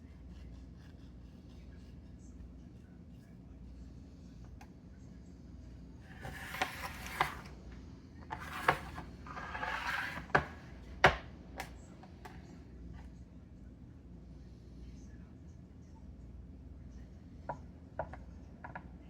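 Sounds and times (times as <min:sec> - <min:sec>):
knife scraping on cutting board: 0:00.0 - 0:02.4, 0:06.1 - 0:07.5, 0:08.3 - 0:11.2.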